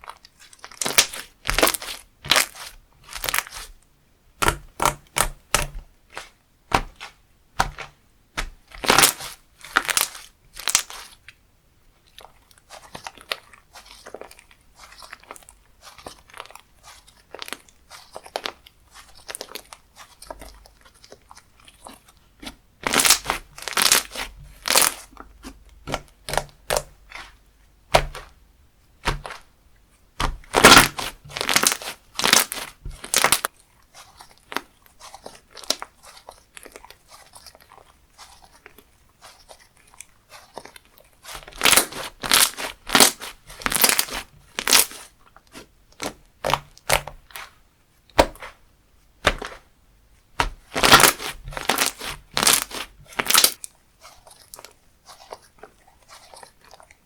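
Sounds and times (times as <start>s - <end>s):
crunchy slime crackling pops: 0.5s - 3.7s, 4.4s - 11.1s, 22.4s - 28.4s, 29.0s - 29.5s, 30.2s - 37.3s, 40.3s - 48.6s, 49.2s - 49.7s, 50.4s - 53.6s.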